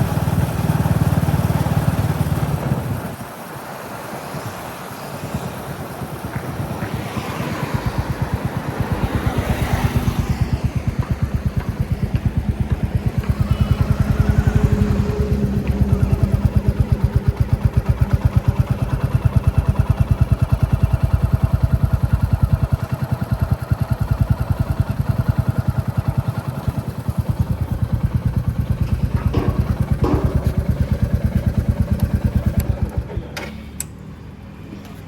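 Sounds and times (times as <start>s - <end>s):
motorcycle engine thumping: 6.2s - 34.0s.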